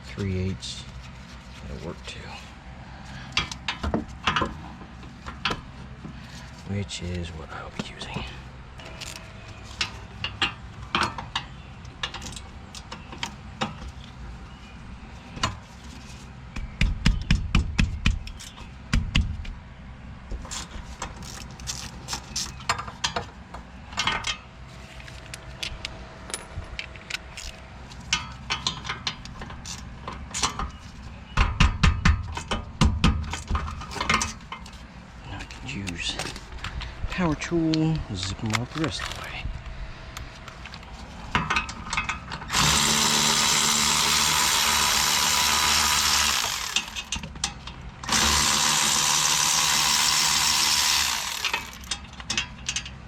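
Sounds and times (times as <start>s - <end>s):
hand ratchet clicking: 42.5s - 47.2s, 48.0s - 52.0s.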